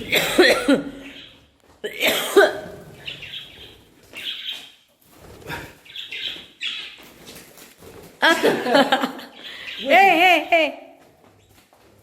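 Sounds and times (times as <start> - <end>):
budgerigars chirping: 1.0 - 1.5, 2.8 - 4.8, 5.8 - 7.0, 9.3 - 10.0.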